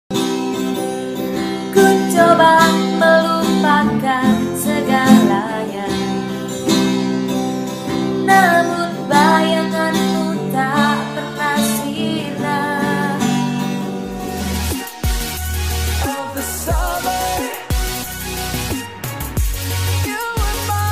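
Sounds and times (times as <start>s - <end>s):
acoustic guitar strumming: 0.1s - 20.9s
wavering melody line: 13.6s - 20.9s.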